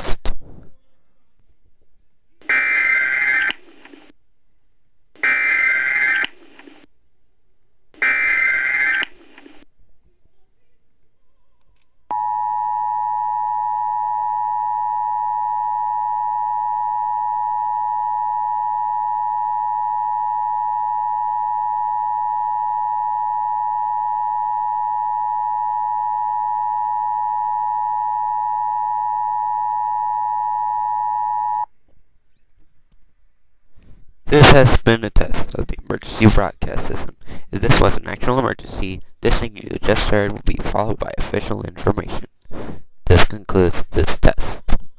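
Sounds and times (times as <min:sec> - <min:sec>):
steady dual-tone alarm: 0:12.1 - 0:31.7.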